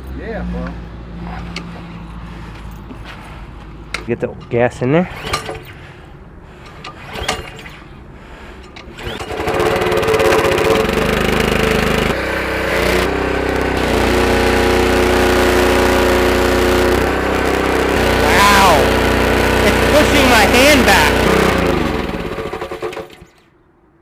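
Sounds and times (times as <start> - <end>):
pull starter cord: 5.1 - 5.8, 6.6 - 7.9, 8.7 - 23.4
small engine running loudly: 9.0 - 23.3.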